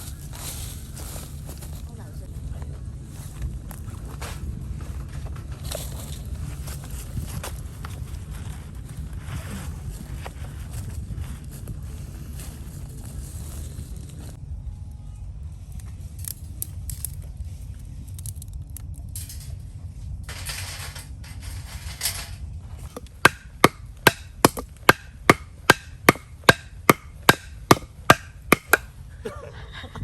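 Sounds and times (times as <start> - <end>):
wind rumble on microphone: 0.0 - 23.2
chopping wood: 22.9 - 28.9.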